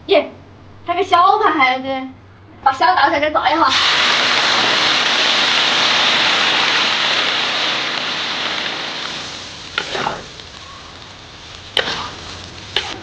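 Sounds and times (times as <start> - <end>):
shrimp sizzling in hot oil: 3.7 - 13.0.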